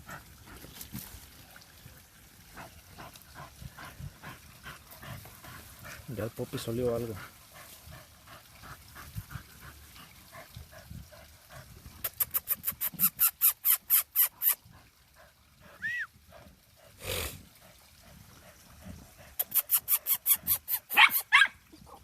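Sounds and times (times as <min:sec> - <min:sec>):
dog whining: 0:12.2 - 0:14.6, 0:15.8 - 0:16.1, 0:19.5 - 0:21.5
dog snorting: 0:16.8 - 0:17.4
dog sniffing hard: 0:16.9 - 0:17.4, 0:18.8 - 0:21.3.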